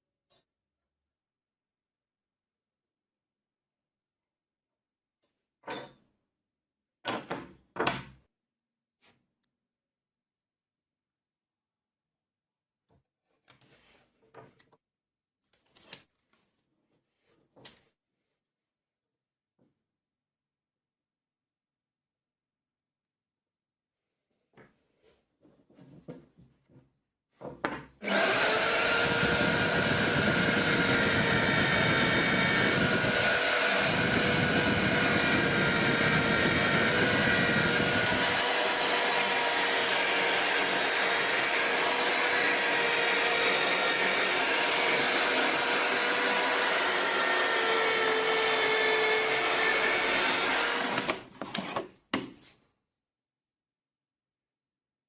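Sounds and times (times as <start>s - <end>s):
chainsaw cutting through log: 28.0s - 51.3s.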